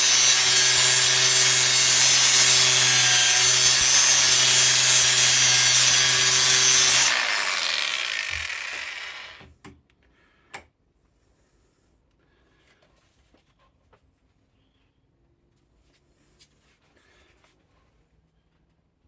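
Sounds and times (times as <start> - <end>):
power tool cutting sheet metal: 0.0 - 9.5.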